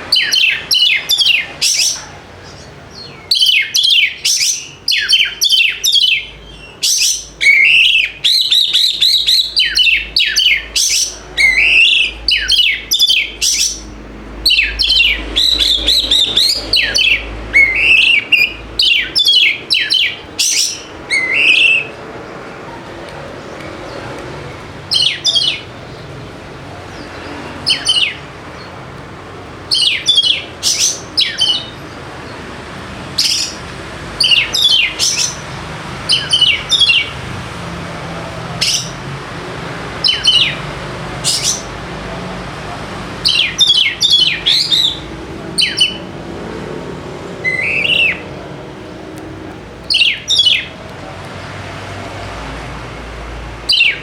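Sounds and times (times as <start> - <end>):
bird singing sharp high notes: 0.1 - 22.0, 24.8 - 26.0, 27.2 - 28.2, 29.7 - 31.8, 34.2 - 35.4, 36.1 - 37.2, 40.0 - 41.7, 43.2 - 46.1, 47.4 - 48.3, 49.9 - 50.8, 53.7 - 54.0.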